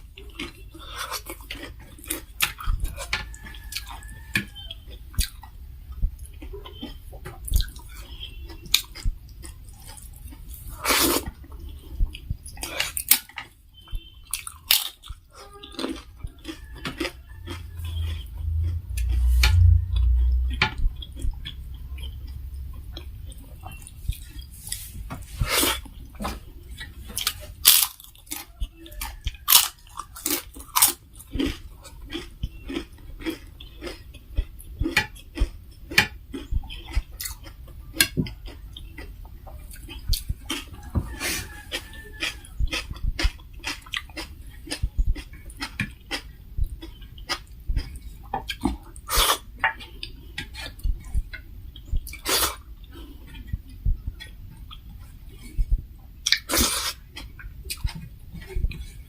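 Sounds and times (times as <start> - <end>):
chewing and crunching food: 0.0 - 59.0
low rumble: 17.6 - 24.4.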